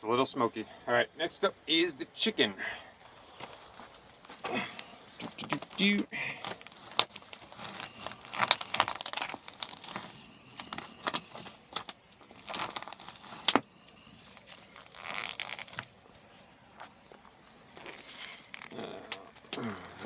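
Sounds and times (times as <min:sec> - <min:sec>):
plastic packaging crinkling: 0:05.3 - 0:20.0.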